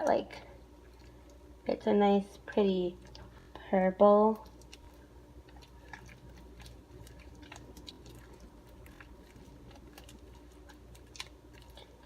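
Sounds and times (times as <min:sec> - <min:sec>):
slime crackling and squishing: 0:02.6 - 0:12.0.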